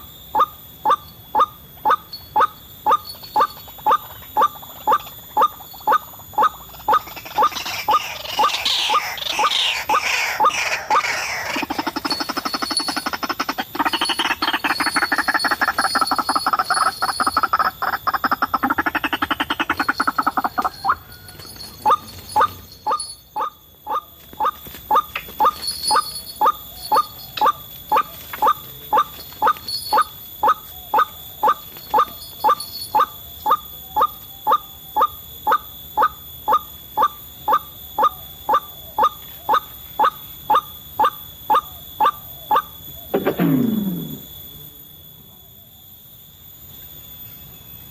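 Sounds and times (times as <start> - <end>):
bird kwak calls: 0.0 - 44.2
bubbling chorus of bird calls: 2.9 - 21.1.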